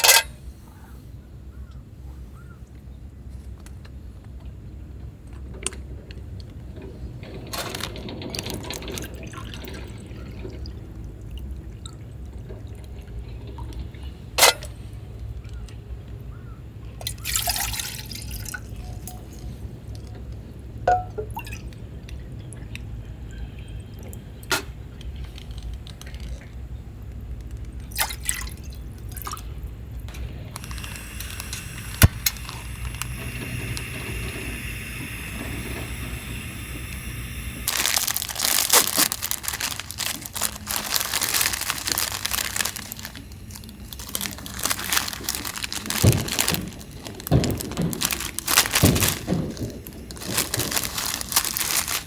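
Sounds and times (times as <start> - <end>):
liquid pouring and dripping: 17.0 - 19.4, 20.9 - 22.8, 30.1 - 52.0.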